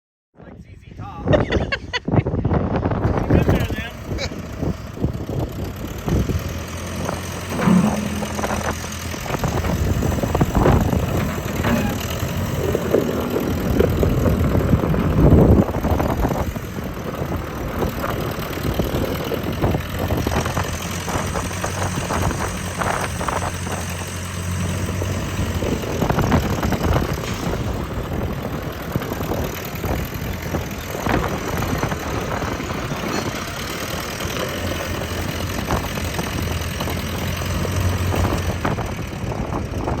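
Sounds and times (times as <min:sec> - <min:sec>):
engine idling: 0:03.0 - 0:40.0
clanks and knocks: 0:06.1 - 0:16.6.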